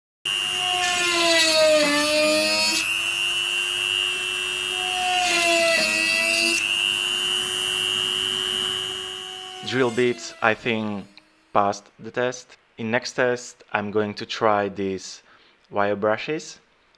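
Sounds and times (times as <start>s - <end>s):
rotary tool drilling: 0.3s - 11.5s.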